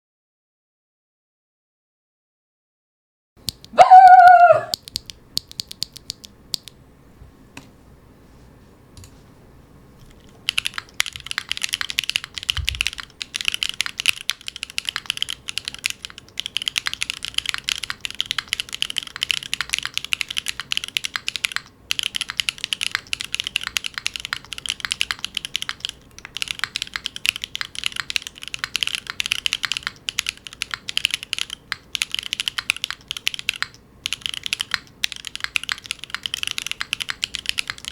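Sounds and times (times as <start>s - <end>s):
mechanical keyboard typing: 4.7s - 6.8s, 10.0s - 37.9s.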